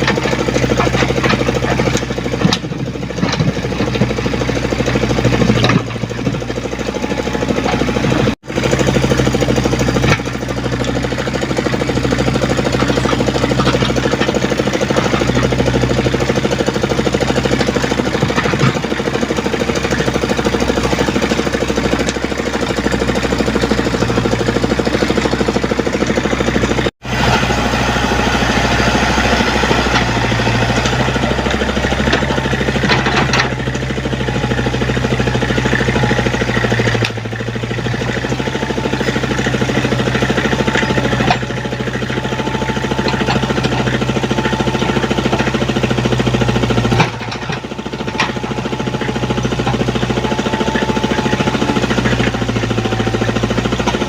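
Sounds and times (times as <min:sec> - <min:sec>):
rattling mechanical clatter: 0:00.0 - 0:26.9
diesel engine running: 0:00.0 - 0:54.0.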